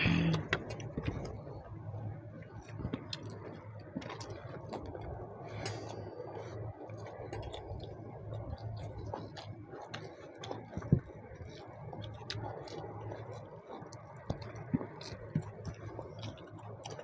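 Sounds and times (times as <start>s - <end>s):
low hum: 0.0s - 9.8s
chewing and eating by hand: 0.0s - 17.0s.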